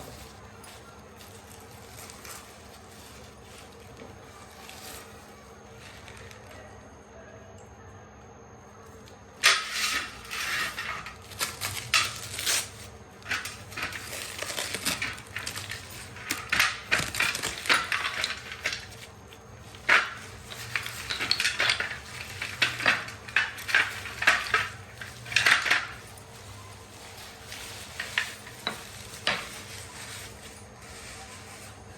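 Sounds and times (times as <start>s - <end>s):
crisp rustling: 0.0s - 6.8s, 8.9s - 31.9s
objects clattering: 9.4s - 31.9s.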